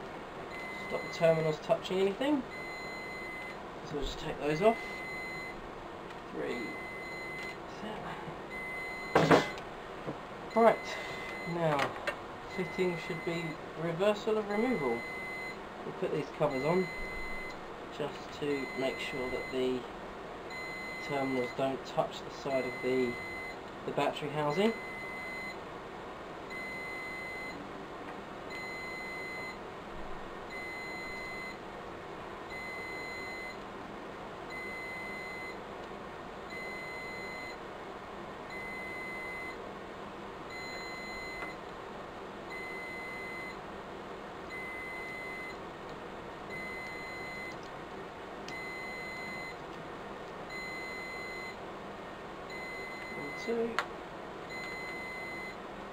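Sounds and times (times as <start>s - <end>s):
alarm beeping: 0.5s - 1.6s, 2.5s - 3.6s, 4.4s - 5.6s, 6.4s - 7.6s, 8.5s - 9.6s, 12.5s - 13.6s, 14.5s - 15.6s, 16.5s - 17.5s, 18.4s - 19.8s, 20.5s - 21.7s, 22.5s - 23.6s, 28.5s - 29.6s, 30.5s - 31.6s, 36.5s - 37.6s, 38.5s - 39.6s, 40.5s - 41.5s, 42.5s - 43.6s, 44.5s - 45.6s, 46.5s - 47.6s, 48.5s - 49.6s, 50.5s - 51.6s, 52.5s - 53.7s, 54.5s - 55.6s.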